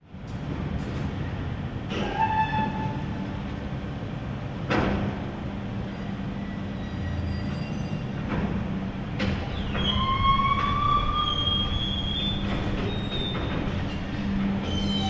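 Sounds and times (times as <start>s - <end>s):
metallic screeching and creaking: 9.6s - 15.0s.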